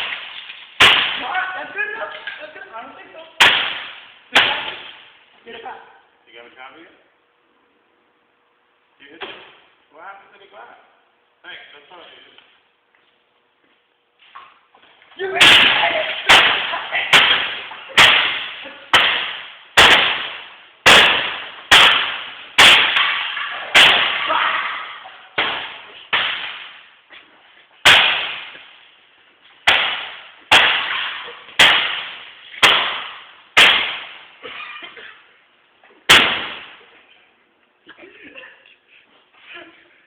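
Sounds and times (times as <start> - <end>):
photocopier being hit hard: 0.0 - 1.4, 3.4 - 4.9, 15.3 - 24.8, 25.4 - 26.8, 27.8 - 28.6, 29.6 - 34.2, 36.1 - 36.8.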